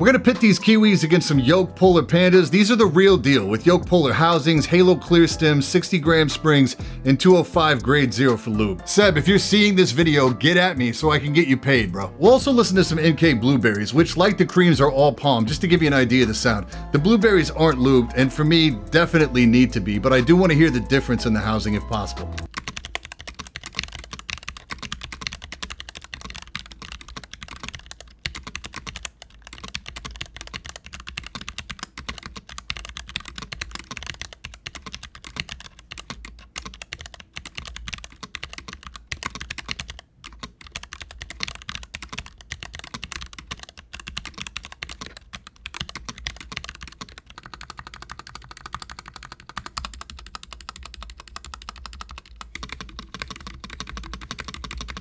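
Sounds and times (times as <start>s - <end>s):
mechanical keyboard typing: 12.0s - 55.0s.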